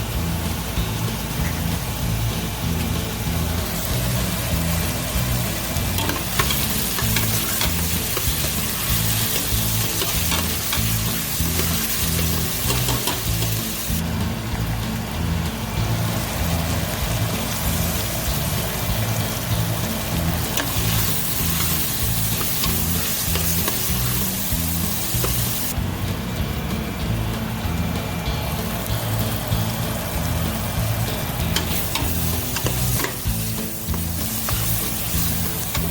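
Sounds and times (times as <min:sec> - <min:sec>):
background music with bassline: 0:00.0 - 0:35.9
food sizzling in hot oil: 0:00.0 - 0:35.9
utensil clicking against pan: 0:05.4 - 0:14.0, 0:20.4 - 0:25.7, 0:31.4 - 0:35.9.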